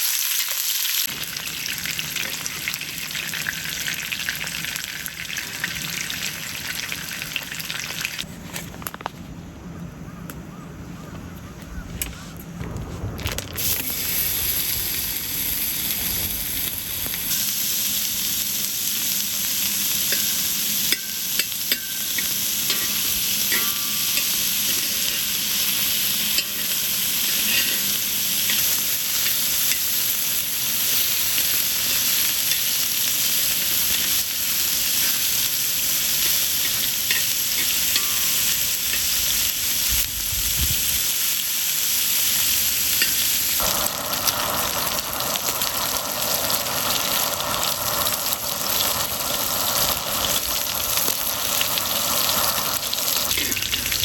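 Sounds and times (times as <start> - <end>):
food sizzling in a hot pan: 0.0 - 8.3, 13.6 - 54.0.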